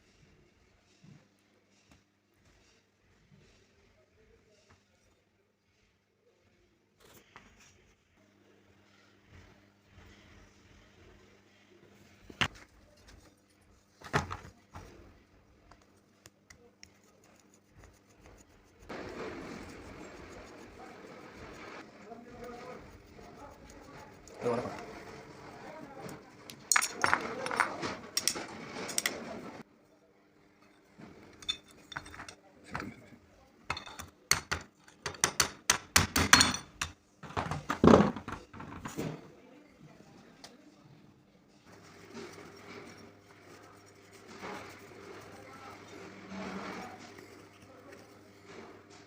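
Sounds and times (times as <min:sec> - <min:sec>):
metal tools clicking and knocking: 0:26.4 - 0:29.2, 0:31.3 - 0:33.0, 0:33.7 - 0:37.0
rustling noise: 0:27.2 - 0:29.6.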